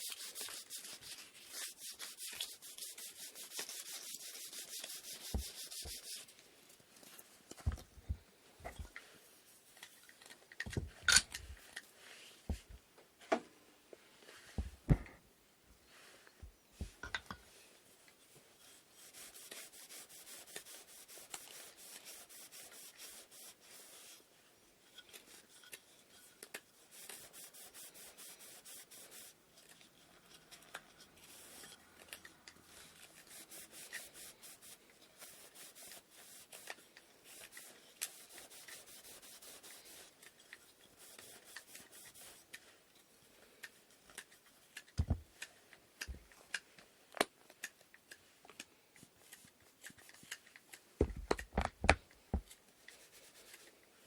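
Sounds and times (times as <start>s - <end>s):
sandpaper strokes on wood: 0.0s - 6.3s, 18.7s - 24.2s, 26.8s - 29.4s, 33.2s - 40.2s
dull knock: 45.0s - 45.2s.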